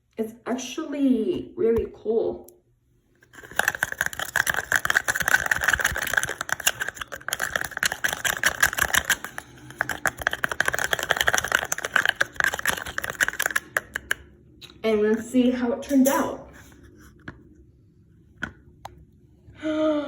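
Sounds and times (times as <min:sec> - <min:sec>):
spoon scraping a bowl: 0:03.3 - 0:15.3.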